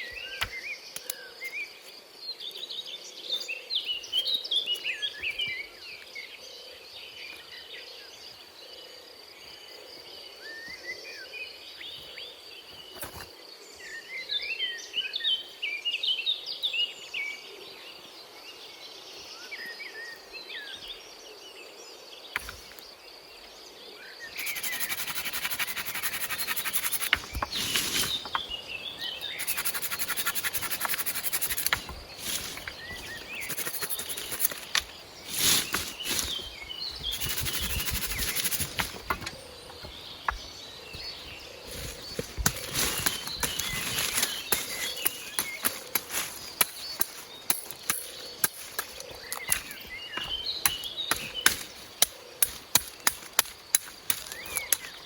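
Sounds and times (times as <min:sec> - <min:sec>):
birds chirping: 0:24.2 - 0:55.0.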